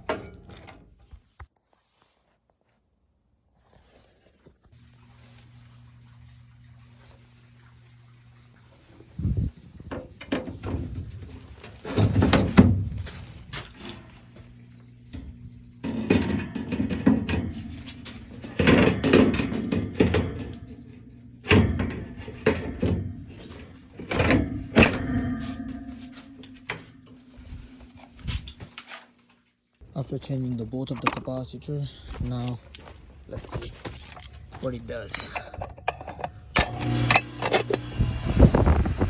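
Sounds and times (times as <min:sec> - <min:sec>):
low hum: 0:04.8 - 0:28.7, 0:29.8 - 0:39.0.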